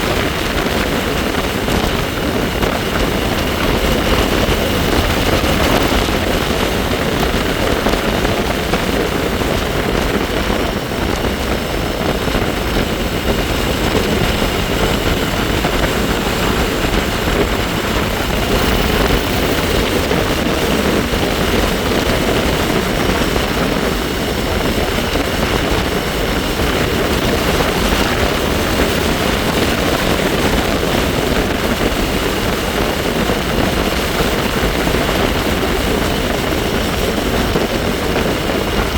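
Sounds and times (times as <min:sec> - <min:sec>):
bike running noise: 0:00.0 - 0:38.9
wind rushing over microphone: 0:00.0 - 0:38.9.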